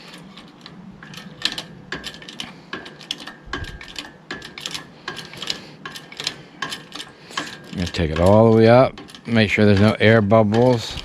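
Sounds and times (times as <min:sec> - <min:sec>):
hydraulic hoist pump clicking and squeaking: 0:00.0 - 0:11.0.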